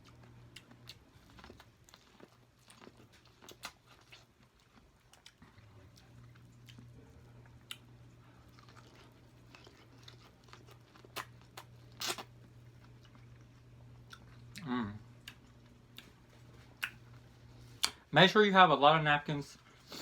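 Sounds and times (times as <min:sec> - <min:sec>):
person chewing food: 0:00.0 - 0:18.0.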